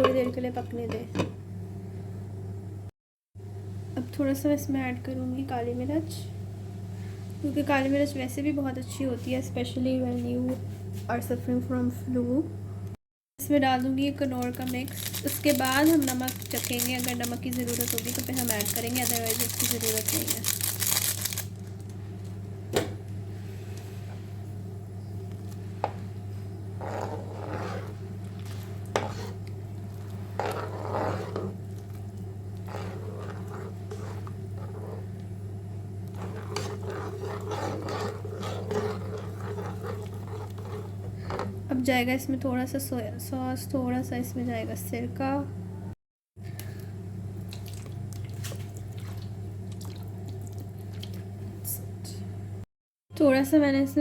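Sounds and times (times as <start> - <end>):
steady low hum: 0.0 - 52.6
scraping stirring: 26.8 - 35.2, 36.1 - 41.6.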